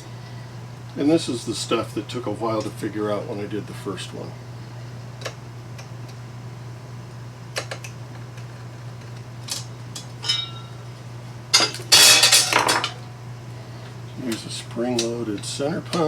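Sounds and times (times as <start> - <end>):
steady low hum: 0.0 - 16.0
ringing metal clink: 10.2 - 10.8.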